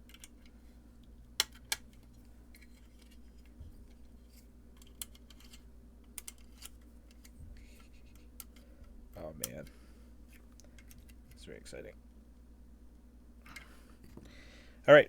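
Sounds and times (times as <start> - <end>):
steady low hum: 0.0 - 15.0
metal hardware being handled: 1.4 - 8.7.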